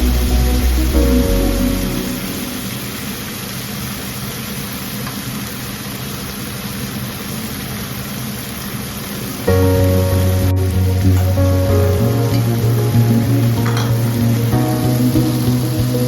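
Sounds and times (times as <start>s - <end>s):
low rumble: 0.0s - 2.8s, 9.5s - 16.0s
background music: 0.0s - 2.9s, 9.5s - 16.0s
steady hiss: 0.0s - 16.0s.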